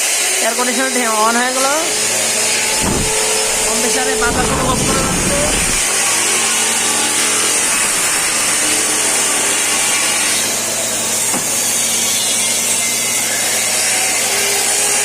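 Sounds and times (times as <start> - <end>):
air conditioner hum: 2.6 - 5.9.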